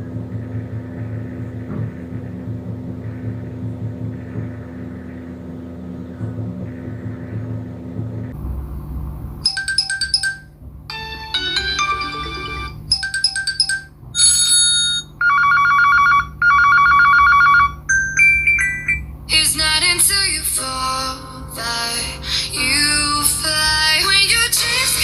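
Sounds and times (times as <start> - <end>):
steady low hum: 0.0 - 11.1, 17.7 - 25.0
phone ringtone melodies: 9.4 - 19.1.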